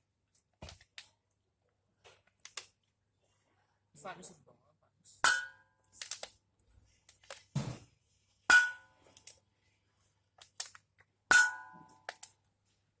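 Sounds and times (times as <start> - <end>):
metal struck hard ringing: 8.5 - 8.9, 11.3 - 11.9.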